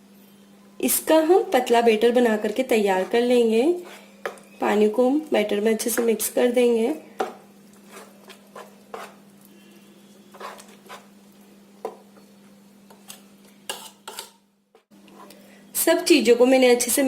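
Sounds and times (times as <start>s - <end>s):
spoon stirring thick batter: 2.4s - 4.6s, 7.2s - 11.2s, 12.9s - 15.4s.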